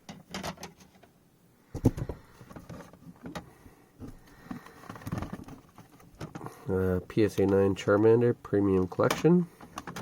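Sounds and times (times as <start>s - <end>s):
plastic slabs clicking and knocking: 8.7s - 10.0s.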